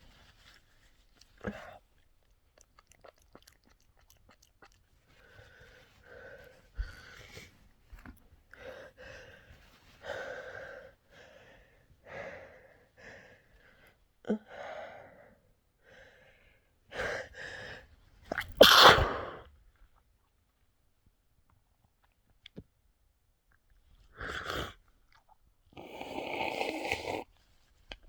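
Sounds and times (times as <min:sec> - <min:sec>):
person sneezing: 0:18.4 - 0:19.4.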